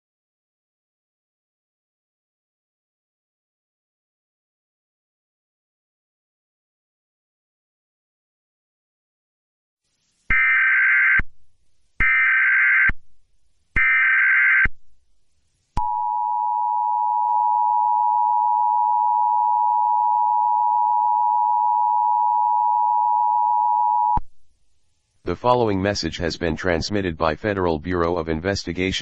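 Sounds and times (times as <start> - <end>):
short data bursts: 13.8 - 14.7.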